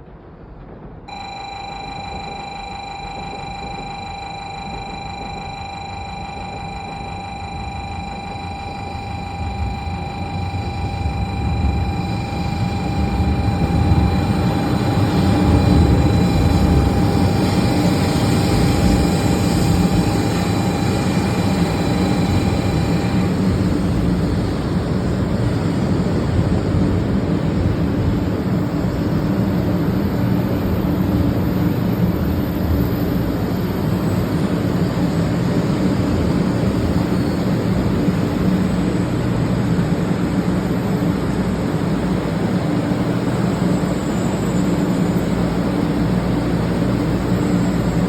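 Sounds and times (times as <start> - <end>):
faint high whine: 0.0 - 48.0
train rumbling at speed: 0.0 - 48.0.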